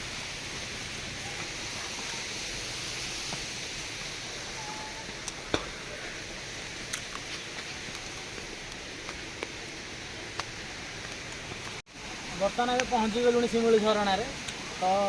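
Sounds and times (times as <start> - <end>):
hissing outdoor background: 0.0 - 15.0.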